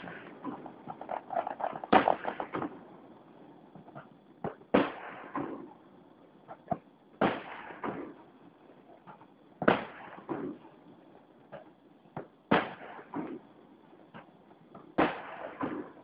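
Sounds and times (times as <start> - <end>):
fireworks shell bursts booming: 0.0 - 2.8, 4.7 - 5.6, 9.6 - 10.6
fireworks pops and crackle: 0.0 - 2.9, 3.8 - 5.8, 6.4 - 10.8, 11.5 - 16.0.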